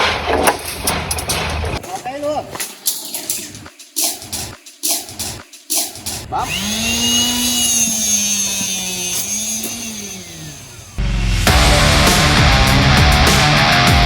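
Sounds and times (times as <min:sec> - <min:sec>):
electric motor whining: 0:06.3 - 0:11.0
loud rock music: 0:11.0 - 0:14.0.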